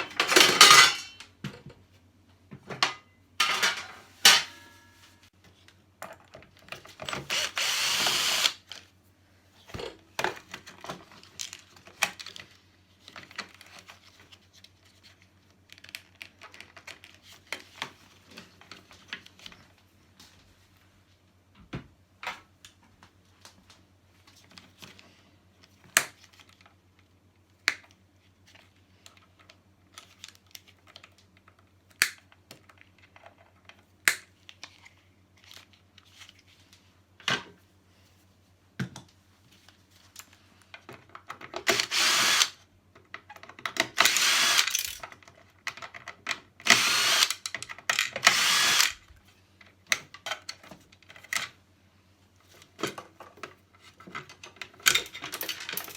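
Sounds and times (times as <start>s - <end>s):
power tool burst: 7.2s - 8.6s, 41.8s - 42.6s, 44.0s - 45.0s, 46.7s - 47.4s, 48.3s - 48.9s.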